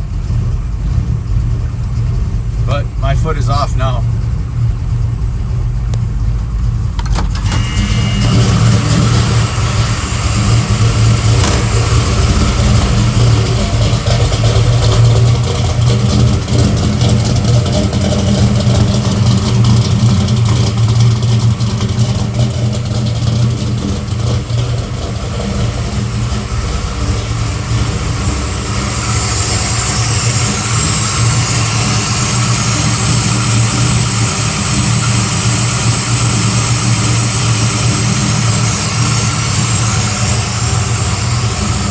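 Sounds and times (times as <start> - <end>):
car engine idling unevenly: 0.0 - 41.9
high hiss: 26.7 - 41.9.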